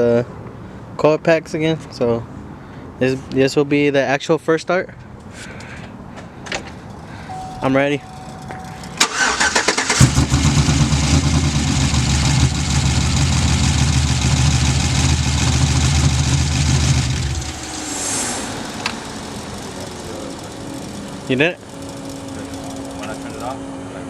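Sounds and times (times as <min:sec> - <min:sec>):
truck engine starter cranking: 0:06.7 - 0:11.6
truck engine running: 0:06.7 - 0:23.8.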